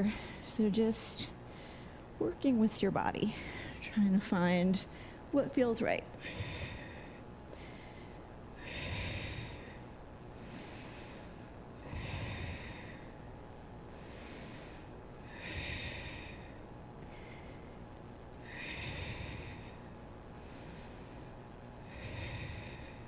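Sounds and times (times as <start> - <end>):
slow deep breathing: 1.5 - 2.1, 6.2 - 13.3, 13.9 - 23.0.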